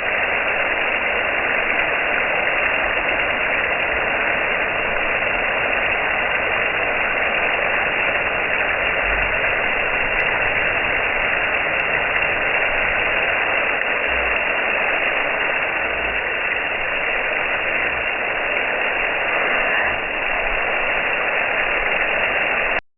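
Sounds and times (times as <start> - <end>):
water spraying from garden hose: 0.0 - 22.8.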